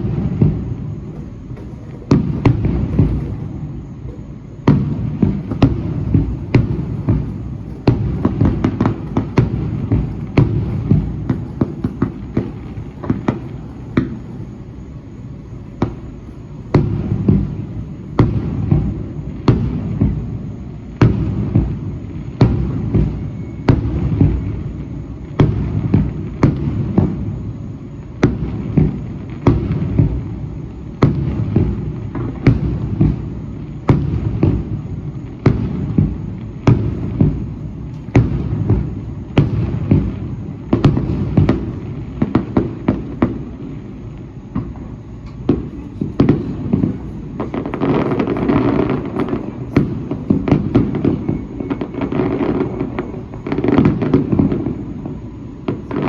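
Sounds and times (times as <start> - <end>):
low rumbling crackle: 0.0 - 14.9
fireworks bangs: 0.0 - 56.0.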